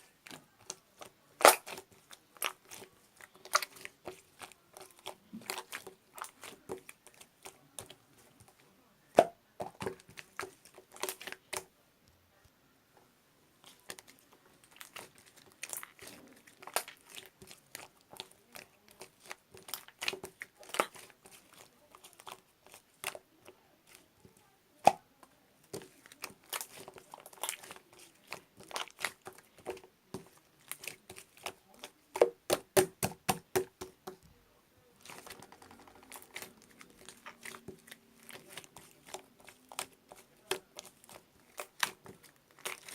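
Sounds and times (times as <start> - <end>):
slime squeezed by hand: 1.4 - 2.8.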